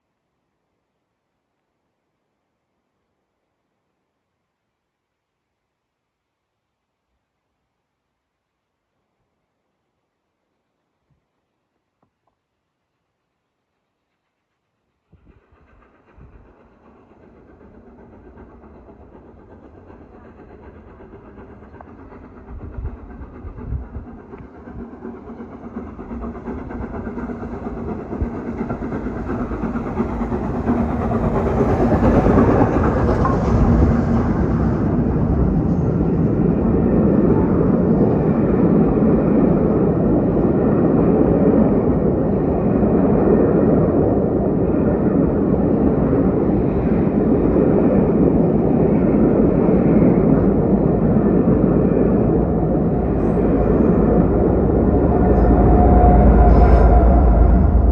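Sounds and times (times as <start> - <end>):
steam locomotive passing: 12.9 - 57.9
coaches clicking on rails: 14.1 - 57.3.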